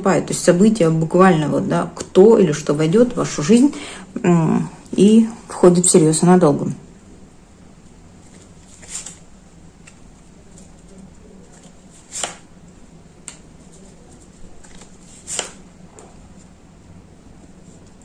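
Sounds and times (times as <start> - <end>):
faint steady hum: 0.0 - 18.0
cards snapping and slapping: 8.3 - 9.2, 11.5 - 12.5, 13.2 - 13.5, 14.6 - 15.7.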